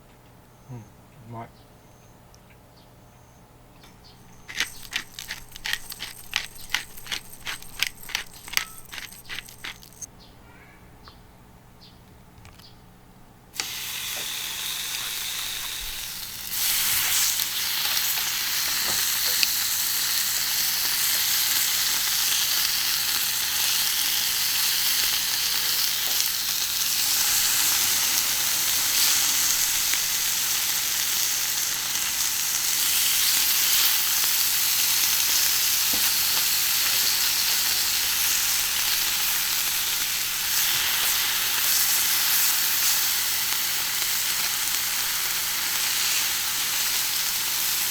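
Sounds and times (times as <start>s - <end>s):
meat sizzling on a griddle: 13.6s - 47.9s.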